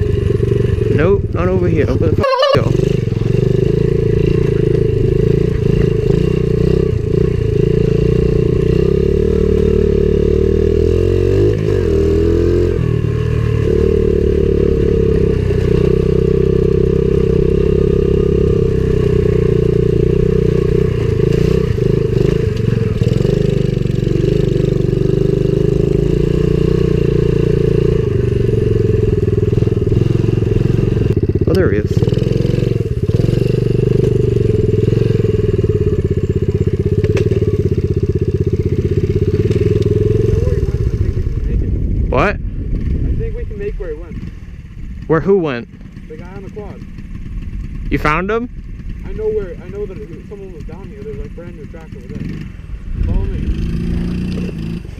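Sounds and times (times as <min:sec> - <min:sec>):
small motorcycle engine running: 0:00.0 - 0:41.8, 0:43.8 - 0:54.9.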